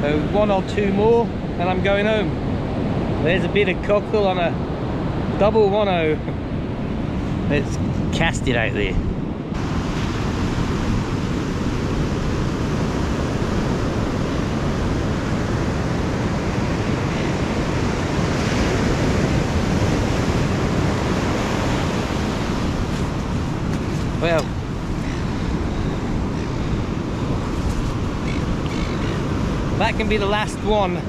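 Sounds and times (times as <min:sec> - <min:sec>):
waves breaking on beach: 0:09.4 - 0:31.0.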